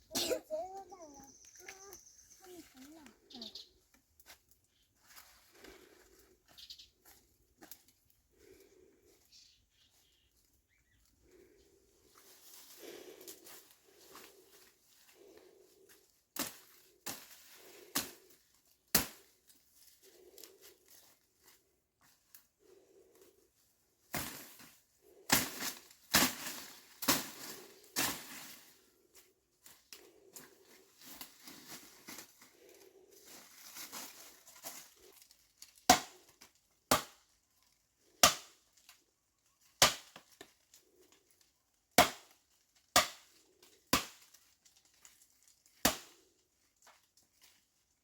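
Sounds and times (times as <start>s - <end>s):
rustling and scraping: 19.4s - 35.6s.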